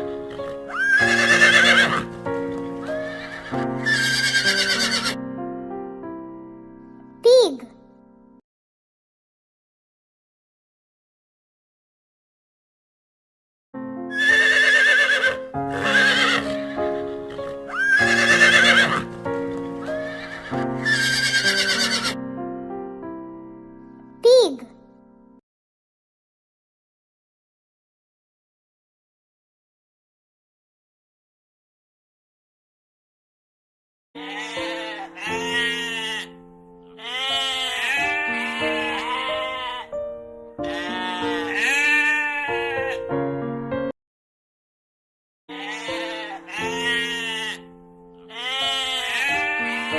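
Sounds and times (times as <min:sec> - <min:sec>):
background music sustained notes: 0:00.0 - 0:08.4, 0:13.8 - 0:25.4, 0:34.2 - 0:43.9, 0:45.6 - 0:49.9
farm animal bleating: 0:00.1 - 0:02.1, 0:02.8 - 0:05.2, 0:14.1 - 0:22.2, 0:34.2 - 0:40.0, 0:40.6 - 0:43.0, 0:45.5 - 0:49.9
horse whinnying: 0:00.3 - 0:02.2, 0:02.8 - 0:05.2, 0:14.1 - 0:22.2, 0:34.2 - 0:36.3, 0:37.0 - 0:39.9, 0:40.6 - 0:43.0, 0:45.6 - 0:47.6, 0:48.3 - 0:49.9.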